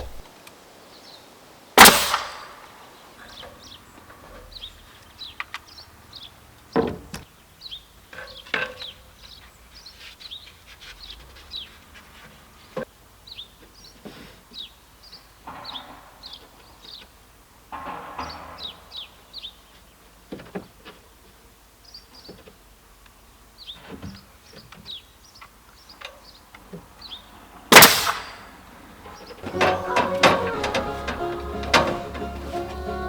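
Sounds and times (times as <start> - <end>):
small birds chirping: 0.0 - 1.4, 2.7 - 17.2, 18.2 - 20.3, 20.9 - 27.6
pneumatic nail gun firing: 1.8 - 2.6, 27.7 - 28.4.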